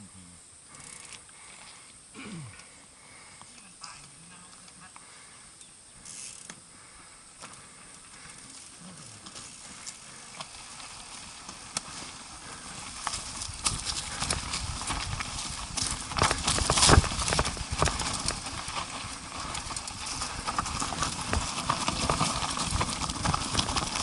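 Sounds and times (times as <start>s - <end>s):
vehicle jolting over rocky ground: 13.4s - 24.0s.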